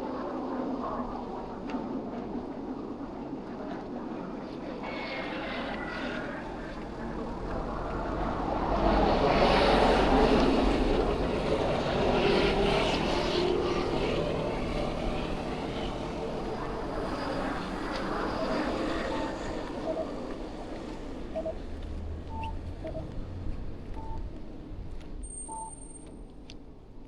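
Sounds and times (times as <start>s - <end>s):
motor vehicle passing by: 17.3s - 24.9s.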